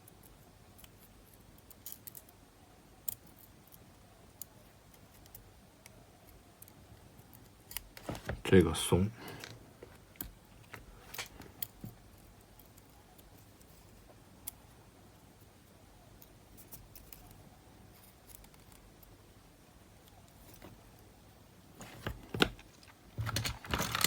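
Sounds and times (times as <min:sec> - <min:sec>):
faint handling: 0:08.0 - 0:12.0, 0:21.8 - 0:24.0.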